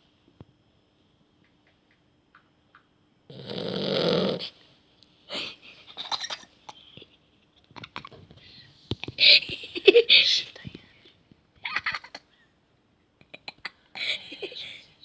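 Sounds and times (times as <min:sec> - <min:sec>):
puppy snoring: 0:03.3 - 0:04.6.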